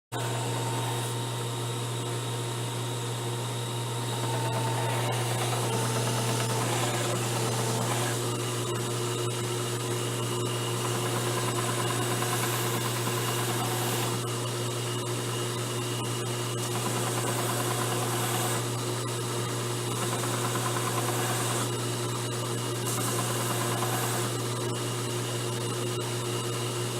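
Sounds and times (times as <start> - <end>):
belt sander motor humming: 0.1 - 14.9, 16.6 - 22.0, 22.6 - 25.2
sanding belt rasping: 22.9 - 24.4.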